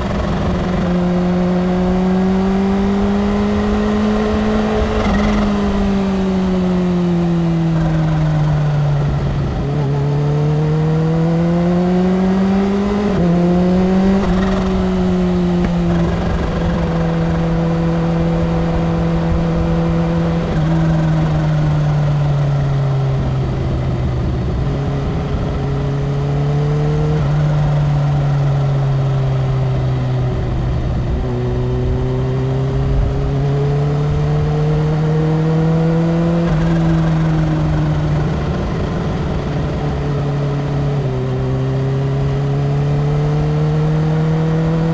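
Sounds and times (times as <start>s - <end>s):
low wind rumble: 0.0s - 44.9s
motorcycle engine at speed: 0.0s - 44.9s.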